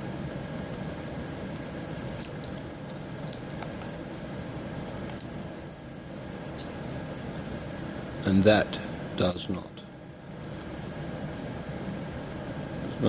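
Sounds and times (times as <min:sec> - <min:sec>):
lock pick clicking and scratching: 0:01.9 - 0:03.9.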